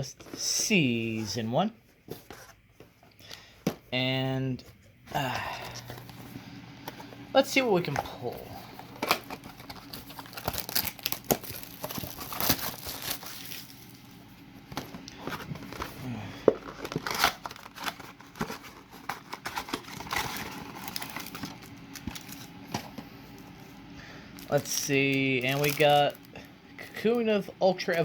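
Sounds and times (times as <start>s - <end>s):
card packaging torn and crinkled: 8.9s - 14.1s, 14.8s - 22.9s, 24.4s - 26.5s.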